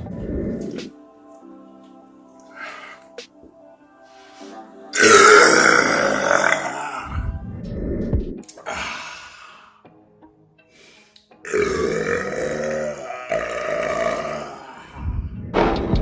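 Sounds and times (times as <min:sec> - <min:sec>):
man burping loudly: 0:05.0 - 0:07.4, 0:11.5 - 0:15.0.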